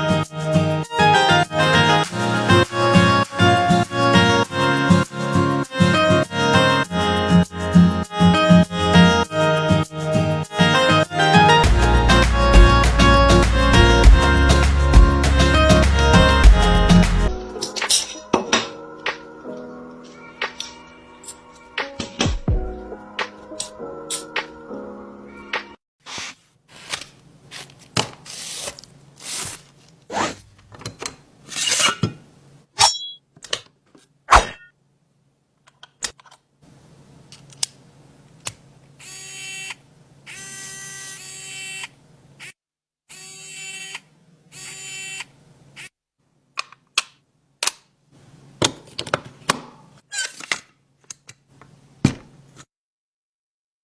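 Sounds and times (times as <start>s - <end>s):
scraping and rubbing strokes: 26.0s - 30.7s, 31.4s - 32.0s.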